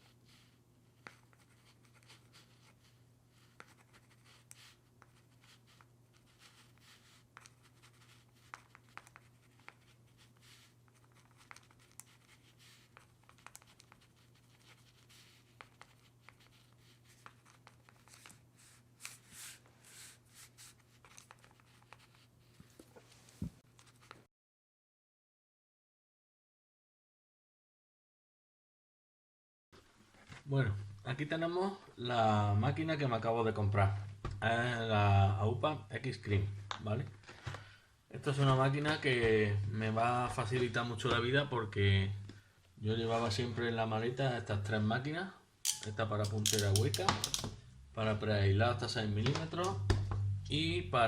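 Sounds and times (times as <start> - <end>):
objects being handled: 45.7 - 47.6
steady low hum: 47.5 - 51.0.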